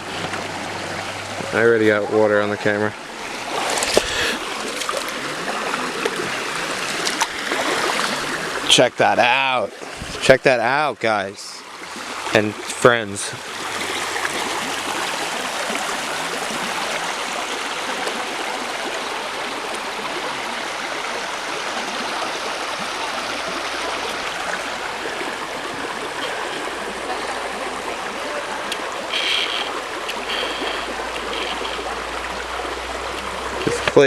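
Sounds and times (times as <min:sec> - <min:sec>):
water rushing over waterfall: 0:02.9 - 0:10.7.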